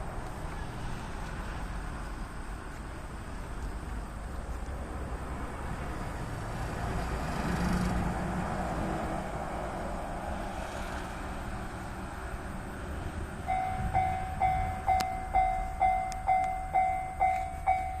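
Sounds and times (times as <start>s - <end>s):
steady low rumble: 11.3s - 18.0s
two-tone crossing warning bell: 13.4s - 18.0s.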